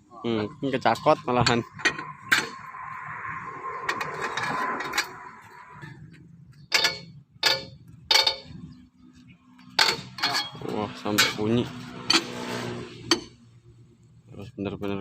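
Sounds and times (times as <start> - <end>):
wrench clanging on wheel nuts: 6.6 - 8.8, 9.6 - 12.4, 13.0 - 13.3.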